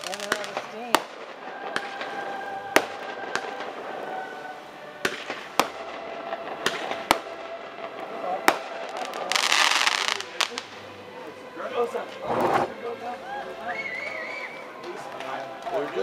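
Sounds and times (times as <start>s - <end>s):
firework bangs: 0.0s - 10.8s
fireworks crackling burst: 0.0s - 11.2s.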